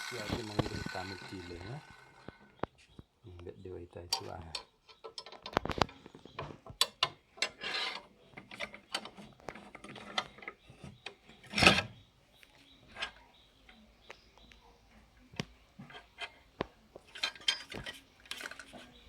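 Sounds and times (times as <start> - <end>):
loud scraping: 0.0 - 2.5
handling saw parts: 0.0 - 2.7, 4.1 - 12.0, 17.0 - 19.0.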